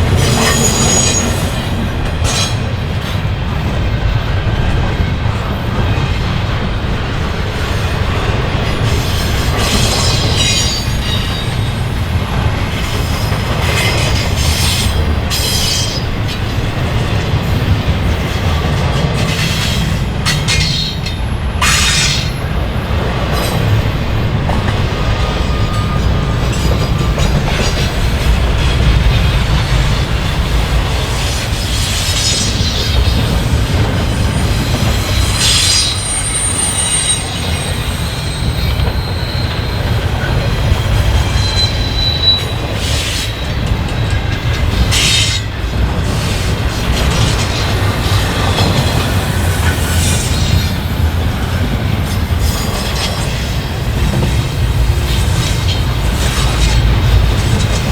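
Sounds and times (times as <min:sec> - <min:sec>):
freight train cars rumbling past: 0:00.0 - 0:57.9
high-pitched wheel squeals: 0:00.2 - 0:01.8, 0:09.7 - 0:11.8, 0:34.3 - 0:44.2.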